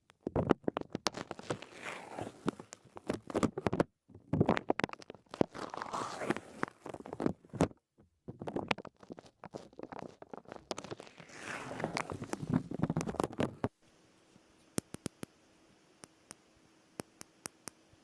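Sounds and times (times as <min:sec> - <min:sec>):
masking tape crackling and peeling: 0:00.8 - 0:03.6, 0:04.5 - 0:07.3, 0:08.8 - 0:13.4.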